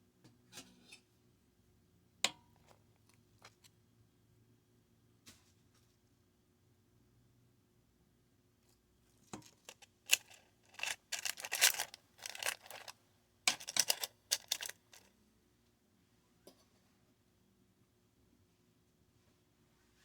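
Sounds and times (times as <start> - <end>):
scraping rustles: 9.4 - 12.9, 13.5 - 15.1.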